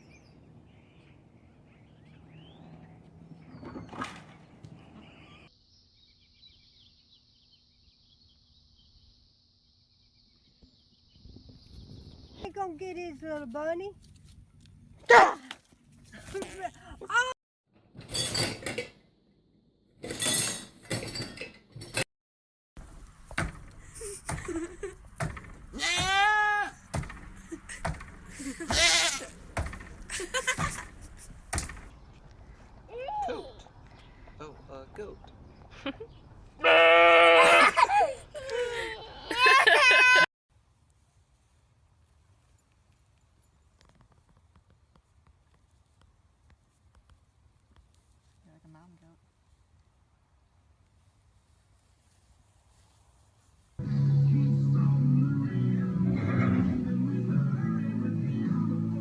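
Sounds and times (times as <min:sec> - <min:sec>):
small birds chirping: 0:04.8 - 0:12.8
goat bleating: 0:25.8 - 0:26.7, 0:28.6 - 0:29.4, 0:36.6 - 0:37.6
sharp knocks: 0:26.9 - 0:28.2.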